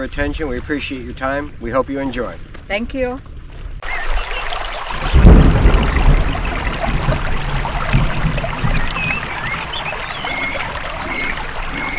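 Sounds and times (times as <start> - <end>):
water washing at shore: 3.8 - 11.9
wind on microphone: 3.8 - 11.9.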